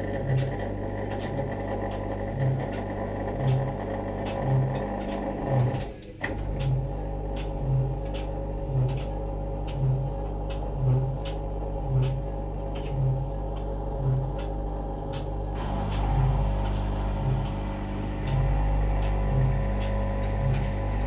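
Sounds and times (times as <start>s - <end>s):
low rhythmic throb: 0.0s - 21.0s
machine humming: 0.0s - 21.0s
faint clicks: 14.3s - 21.0s.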